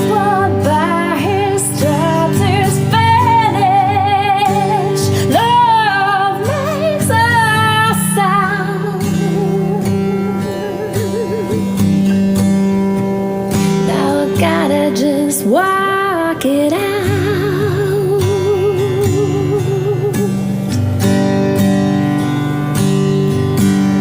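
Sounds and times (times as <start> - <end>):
woman singing worship song: 0.0 - 11.8, 13.9 - 20.4
acoustic guitar: 0.0 - 24.0.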